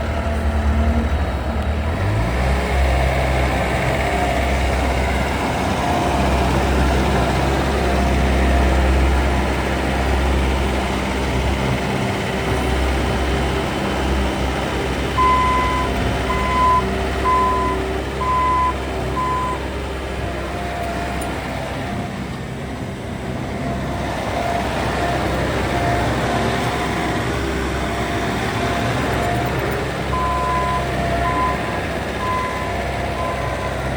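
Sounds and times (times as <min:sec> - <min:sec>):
diesel engine running: 0:00.0 - 0:33.9
backup alarm beeping: 0:15.2 - 0:19.6, 0:30.1 - 0:33.8.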